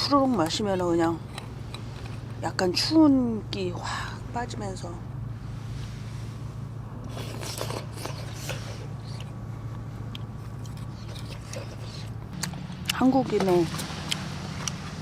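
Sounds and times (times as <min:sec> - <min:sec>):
steady low hum: 0:00.0 - 0:15.0
chewing and slurping: 0:07.0 - 0:15.0.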